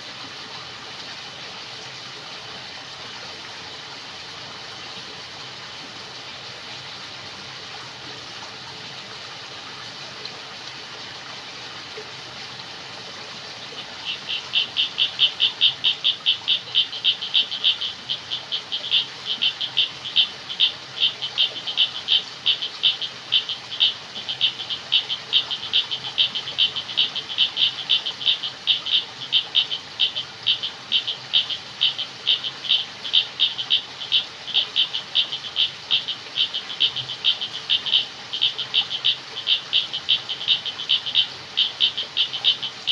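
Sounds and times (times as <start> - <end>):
faint background hiss: 0.0 - 42.9
frog calling in pulses: 13.8 - 42.9.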